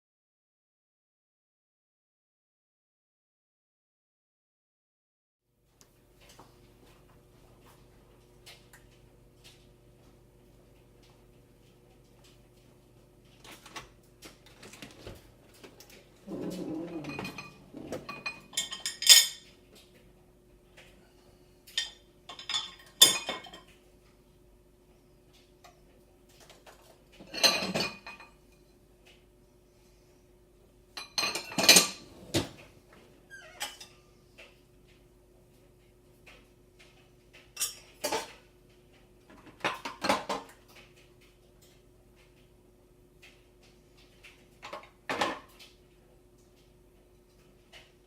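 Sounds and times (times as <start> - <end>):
faint steady hum: 5.5 - 48.0
dishes and cutlery clattering: 16.2 - 19.5, 21.8 - 23.7, 26.4 - 28.7, 31.0 - 32.6, 37.6 - 38.4, 39.3 - 40.6.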